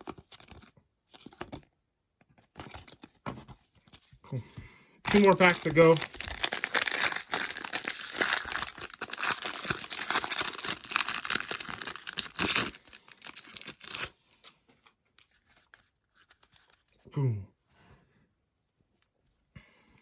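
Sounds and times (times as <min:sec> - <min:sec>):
card pack wrapper crinkling: 0:00.0 - 0:01.6, 0:02.3 - 0:03.2, 0:05.1 - 0:14.5.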